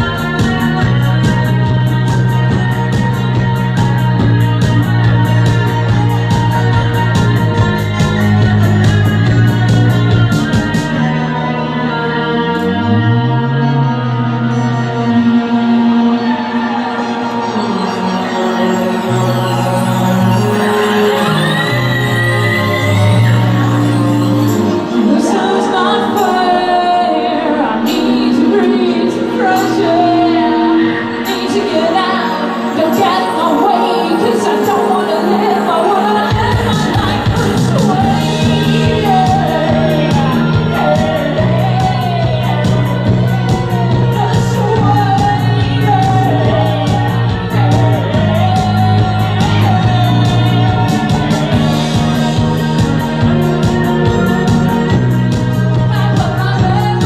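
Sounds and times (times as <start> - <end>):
live band playing: 0.0 - 12.8, 13.5 - 57.0
bass notes: 0.0 - 16.1, 17.4 - 25.8, 36.3 - 57.0
wavering lead melody: 0.0 - 57.0
woman singing: 0.0 - 57.0.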